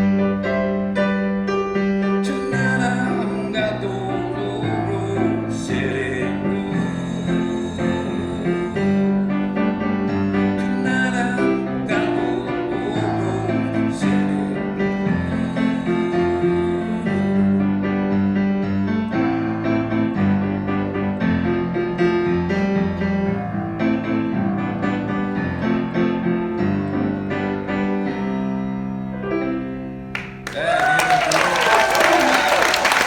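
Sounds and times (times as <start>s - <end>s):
piano playing chords and melody: 0.0s - 30.7s
audience applause: 30.2s - 33.0s.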